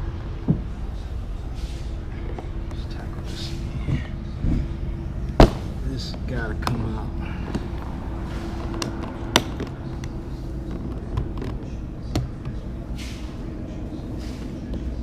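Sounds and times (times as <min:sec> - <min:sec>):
low hum: 0:00.0 - 0:15.0
sharp clicks and knocks of car trim: 0:08.6 - 0:12.6.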